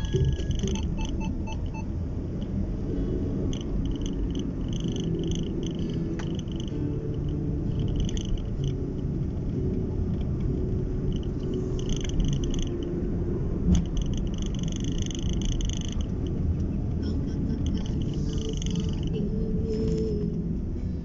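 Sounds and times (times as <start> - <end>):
high pulsed buzzing: 0.0 - 2.0
car road and engine rumble: 0.0 - 21.0.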